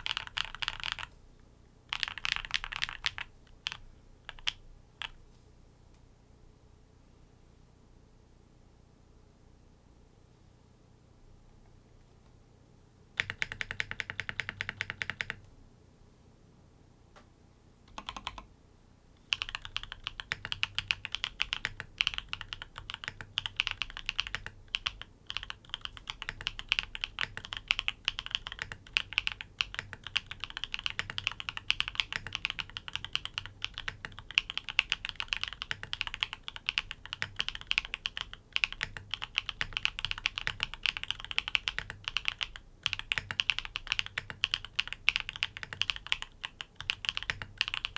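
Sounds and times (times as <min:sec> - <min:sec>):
mechanical keyboard typing: 0:00.0 - 0:01.1, 0:01.9 - 0:05.2, 0:13.2 - 0:15.4, 0:17.9 - 0:18.5, 0:19.3 - 0:47.9.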